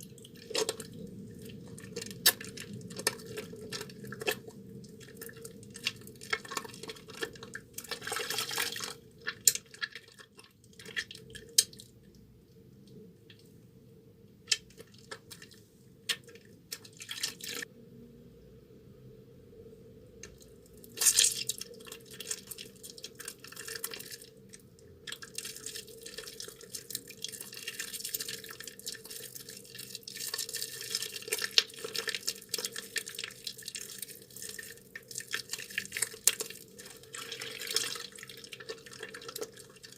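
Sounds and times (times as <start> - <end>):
wet soap squelching: 0.0 - 11.9, 14.5 - 17.7, 25.0 - 39.9
water dripping: 0.0 - 12.2, 20.2 - 39.9.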